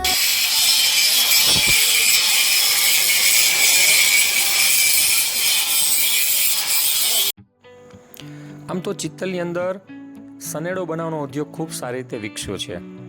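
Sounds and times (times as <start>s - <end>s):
power tool hissing: 0.0s - 7.3s.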